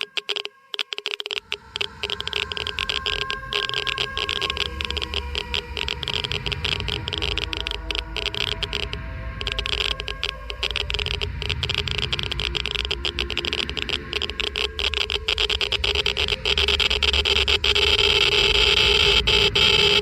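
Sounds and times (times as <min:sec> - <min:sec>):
geiger counter clicking: 0:00.0 - 0:20.0.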